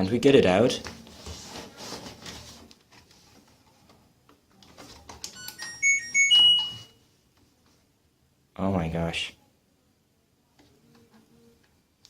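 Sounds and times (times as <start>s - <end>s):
washing machine beep tune: 5.4s - 7.0s.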